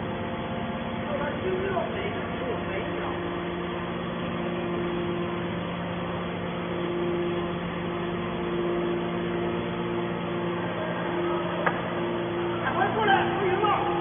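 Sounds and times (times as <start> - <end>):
baler mechanical hum: 0.0 - 14.0
higher machine tone: 0.0 - 14.0.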